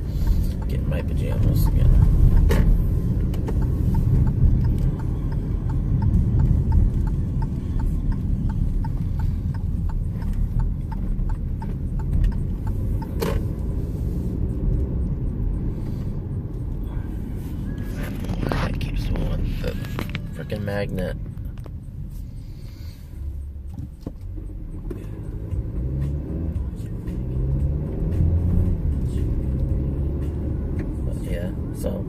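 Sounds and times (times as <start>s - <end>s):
regular ticking: 0.0s - 17.8s
car driving rumble inside cabin: 0.0s - 32.0s.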